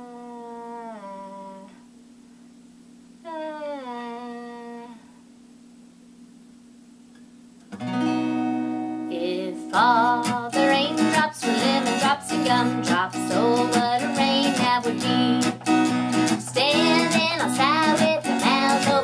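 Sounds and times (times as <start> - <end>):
acoustic guitar strumming: 7.7 - 19.0
person singing: 9.1 - 15.6, 16.2 - 19.0.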